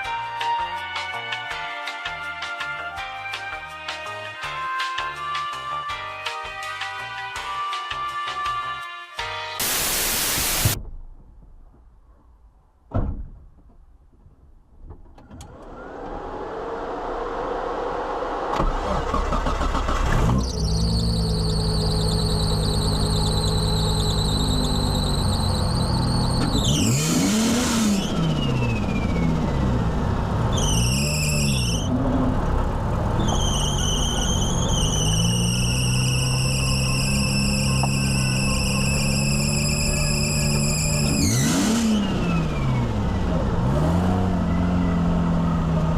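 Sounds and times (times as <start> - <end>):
turbo rushing noise: 9.6 - 10.8
car engine revving: 15.6 - 45.9
belt squeal: 20.4 - 29.4, 30.5 - 31.9, 33.2 - 42.9.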